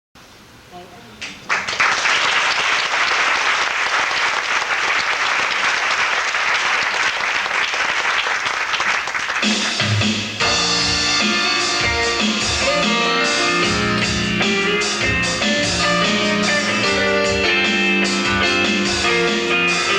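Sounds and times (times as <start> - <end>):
audience applauding: 1.2 - 14.3
rock band playing: 9.4 - 19.9.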